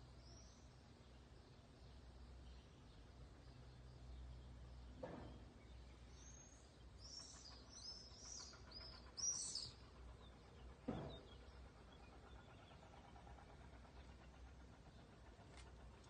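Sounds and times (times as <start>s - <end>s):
small bird chirping: 5.7s - 12.8s.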